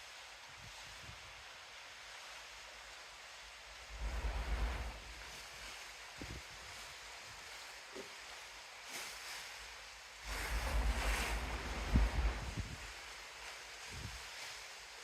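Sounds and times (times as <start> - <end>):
sea rushing: 3.6 - 6.1, 10.2 - 13.2
wind buffeting microphone: 3.9 - 5.4, 10.2 - 13.0.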